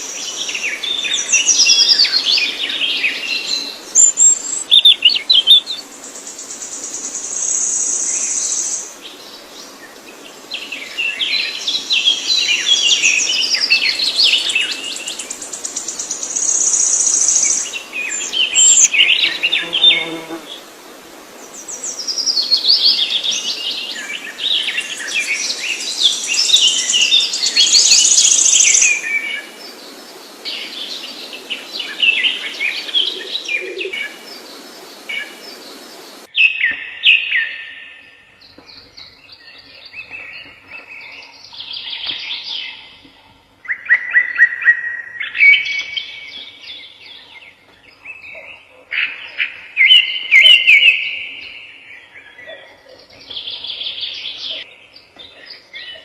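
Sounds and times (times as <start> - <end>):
background hiss: 0.0 - 36.5
songbirds chirping: 0.0 - 56.0.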